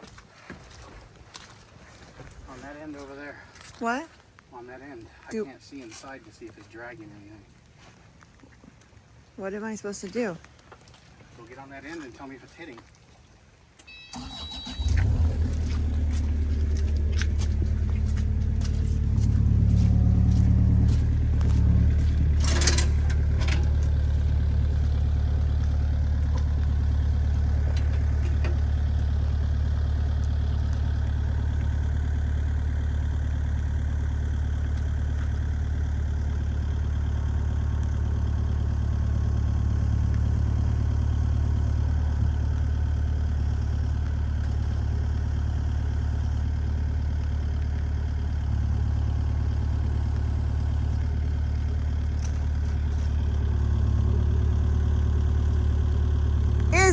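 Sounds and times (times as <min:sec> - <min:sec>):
engine cranking and idling: 0:13.8 - 0:56.9.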